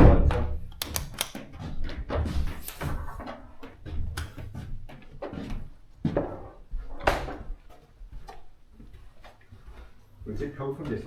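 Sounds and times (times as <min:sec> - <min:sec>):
knocks and clicks: 0:00.0 - 0:04.6.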